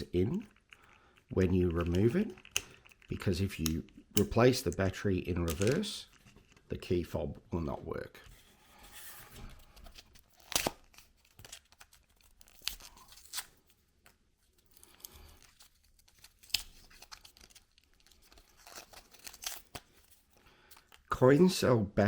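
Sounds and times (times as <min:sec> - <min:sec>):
packaging being torn open: 0:09.7 - 0:14.2, 0:14.8 - 0:21.0.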